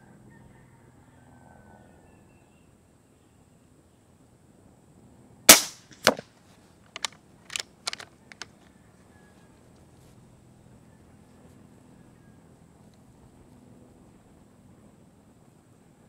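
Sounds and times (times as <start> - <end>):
air rifle shot: 5.5 - 6.2
quieter crack: 5.5 - 6.3
light clicks: 6.9 - 8.5.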